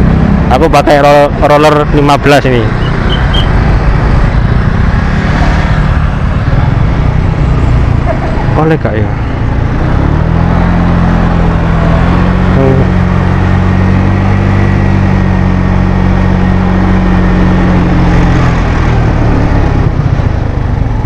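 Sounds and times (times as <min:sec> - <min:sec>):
scooter engine running: 0:02.7 - 0:10.4, 0:17.8 - 0:21.0.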